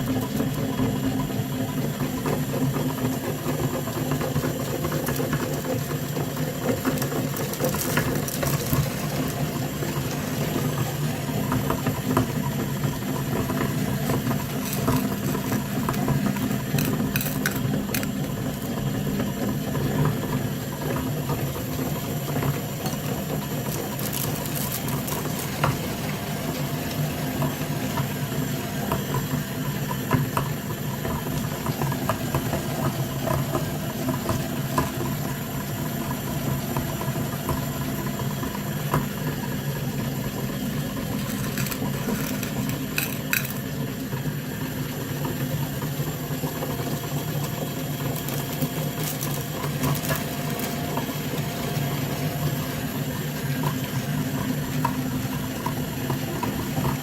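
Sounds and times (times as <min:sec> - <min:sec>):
clicks and rattles: 0:14.5 - 0:18.2, 0:41.0 - 0:43.6
small electric motor humming: 0:41.0 - 0:43.6.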